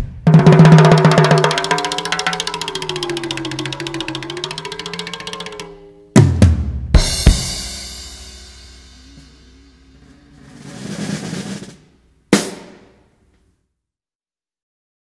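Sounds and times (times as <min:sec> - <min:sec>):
cymbal swell: 0:00.8 - 0:06.4, 0:07.0 - 0:12.1
cymbal wash: 0:00.8 - 0:06.4, 0:07.0 - 0:12.7
kick and snare drum strikes: 0:06.2 - 0:07.8.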